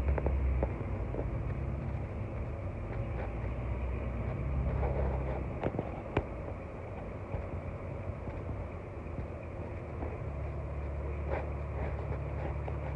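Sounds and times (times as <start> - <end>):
road and engine rumble inside car: 0.0 - 12.9.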